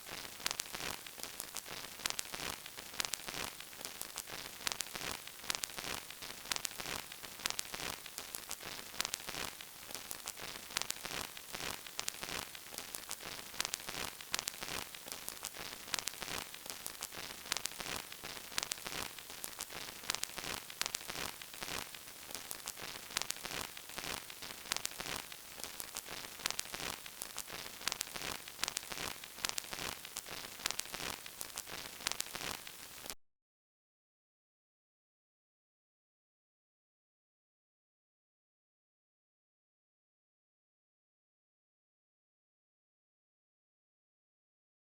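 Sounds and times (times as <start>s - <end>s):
vinyl record crackle: 0.0s - 33.2s.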